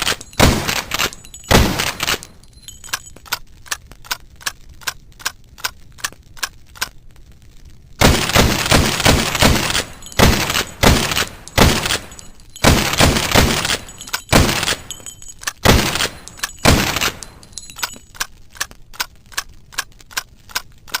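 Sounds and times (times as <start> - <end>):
rifle shots: 0.0 - 2.4, 8.0 - 17.6
steady ticking: 8.0 - 21.0.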